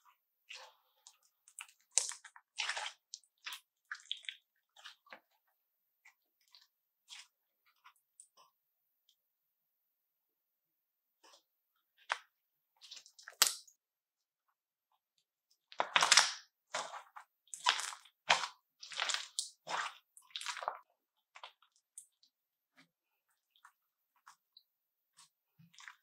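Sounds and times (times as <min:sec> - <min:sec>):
slime crunching and popping: 0:01.5 - 0:04.9, 0:12.9 - 0:13.7, 0:15.8 - 0:20.8.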